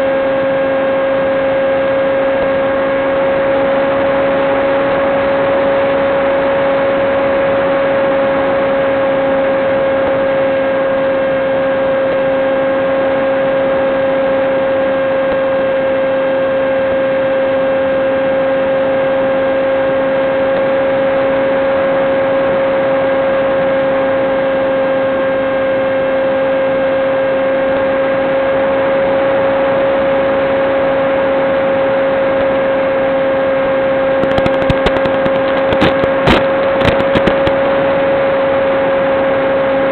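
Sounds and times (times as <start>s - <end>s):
electric motor propeller whine: 0.0s - 39.9s.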